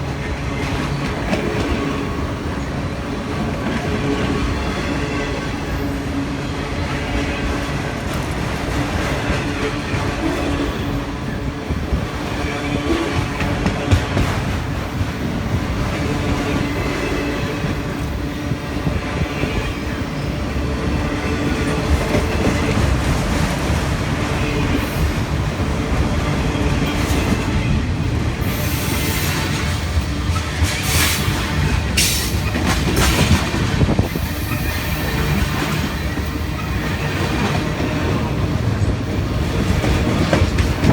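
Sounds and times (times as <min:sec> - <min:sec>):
wheels squealing on rails: 0:14.9 - 0:23.2, 0:24.1 - 0:40.9
wheels clacking over rail joints: 0:21.2 - 0:40.9.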